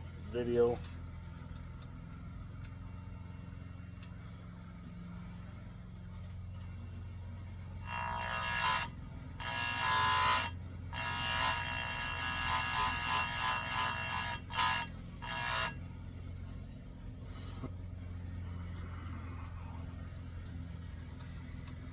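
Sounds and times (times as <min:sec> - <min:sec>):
grinder wheel grinding whine: 0:06.6 - 0:21.9
grinder motor humming: 0:07.6 - 0:16.7.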